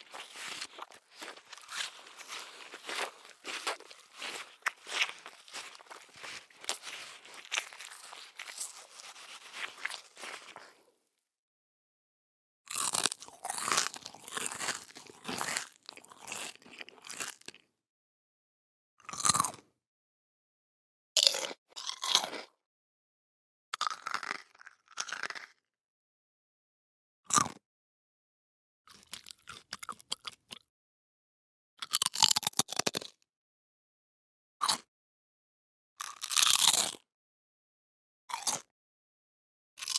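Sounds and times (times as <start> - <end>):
chewing crunchy food: 0.0 - 10.9, 12.7 - 17.6, 19.1 - 19.6, 21.2 - 22.5, 23.8 - 25.6, 28.9 - 30.6, 31.8 - 33.1, 36.0 - 37.0, 38.3 - 38.7.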